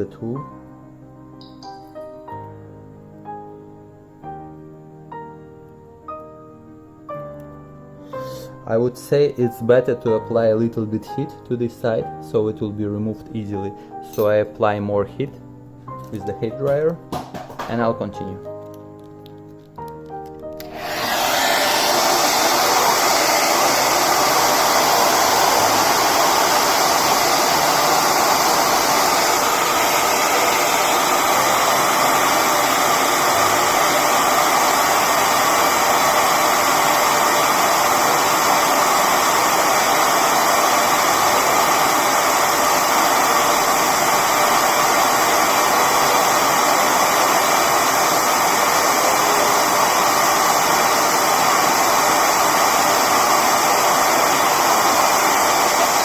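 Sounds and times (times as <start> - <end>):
hair dryer running: 20.6 - 56.0.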